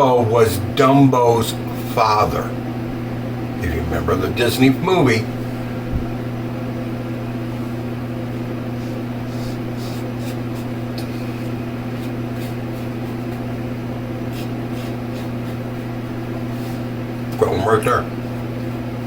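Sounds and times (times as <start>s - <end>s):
low electrical hum: 0.0s - 19.0s
razor scraping stubble: 8.9s - 17.4s.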